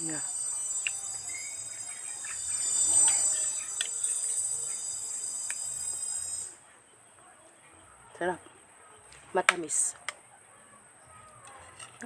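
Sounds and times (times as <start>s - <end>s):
insects chirring: 0.0s - 6.6s.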